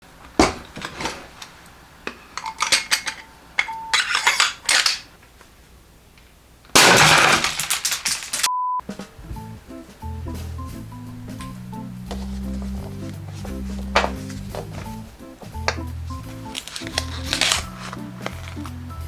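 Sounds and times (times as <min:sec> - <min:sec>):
short steady beep: 0:08.5 - 0:08.8.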